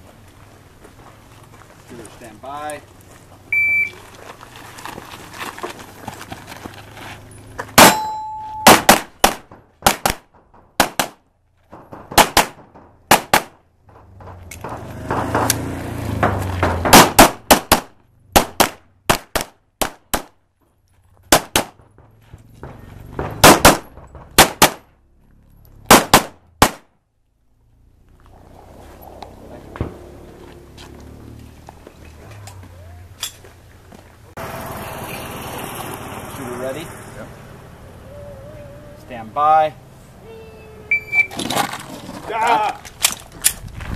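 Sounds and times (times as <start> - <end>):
shot timer beep: 3.6 - 4.0
pistol shots: 8.6 - 11.2, 12.1 - 13.6, 16.8 - 20.3, 21.3 - 21.8, 23.2 - 24.9, 25.9 - 26.9.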